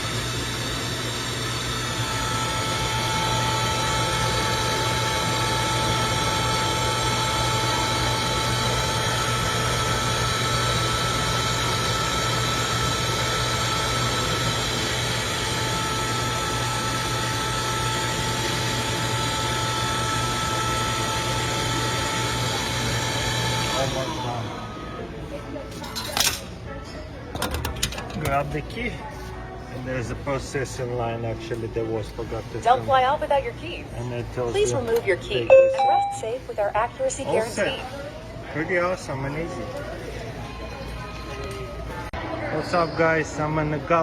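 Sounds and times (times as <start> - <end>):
key cutting machine whine: 0.0 - 25.2.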